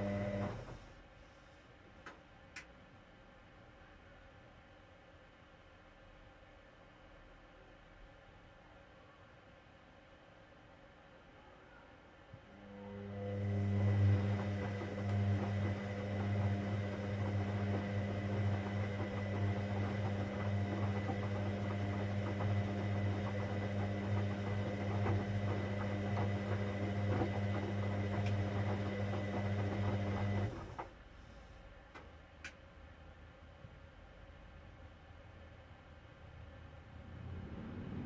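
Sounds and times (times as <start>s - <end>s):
washing machine humming and rattling: 0.0s - 1.1s, 12.5s - 31.3s.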